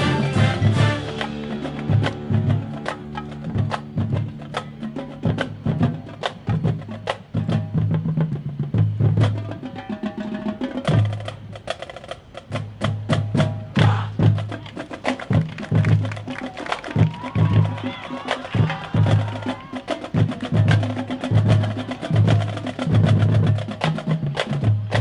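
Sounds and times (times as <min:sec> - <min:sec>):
repeated low notes: 0:00.0 - 0:05.7
marching band playing: 0:00.0 - 0:25.0.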